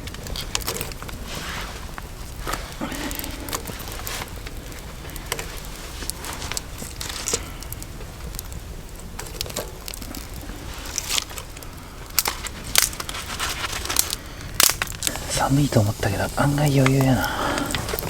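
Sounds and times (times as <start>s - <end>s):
campfire crackling and popping: 0.0s - 18.0s
steady low rumble: 14.2s - 18.0s.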